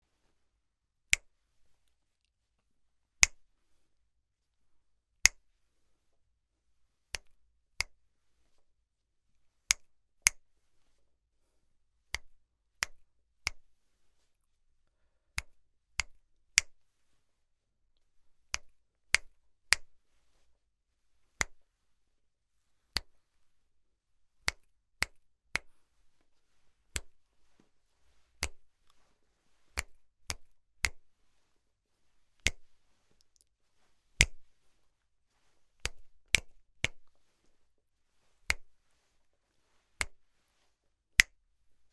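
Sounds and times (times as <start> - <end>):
finger snaps: 1.1 - 2.0, 3.2 - 3.5, 5.2 - 5.5, 7.1 - 8.0, 9.7 - 10.4, 12.1 - 13.7, 15.4 - 16.8, 18.5 - 20.0, 21.4 - 21.6, 23.0 - 23.2, 24.4 - 25.8, 26.9 - 27.7, 28.4 - 29.0, 29.7 - 31.1, 32.4 - 33.5, 34.2 - 34.5, 35.8 - 37.2, 38.5 - 38.8, 40.0 - 40.2, 41.2 - 41.4.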